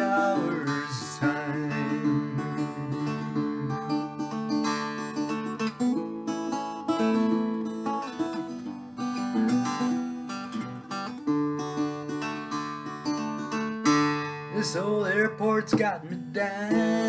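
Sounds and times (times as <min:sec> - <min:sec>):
person singing: 0:00.0 - 0:05.3, 0:14.3 - 0:17.0
acoustic guitar strumming: 0:00.0 - 0:17.0.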